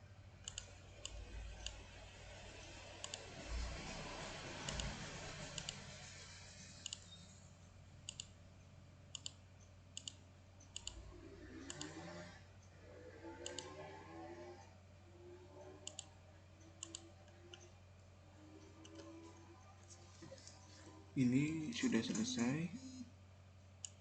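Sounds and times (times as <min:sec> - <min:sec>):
low electrical hum: 0:00.0 - 0:24.0
computer mouse clicking: 0:00.4 - 0:01.8, 0:03.0 - 0:03.3, 0:04.6 - 0:05.8, 0:06.8 - 0:07.1, 0:08.0 - 0:08.4, 0:09.1 - 0:12.3, 0:13.4 - 0:14.1, 0:15.6 - 0:17.7, 0:18.6 - 0:20.6, 0:23.8 - 0:24.0.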